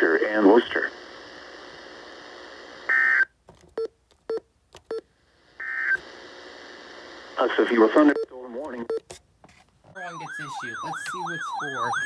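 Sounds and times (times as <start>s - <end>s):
faint transmitter hiss: 0.0s - 3.3s, 4.1s - 8.9s.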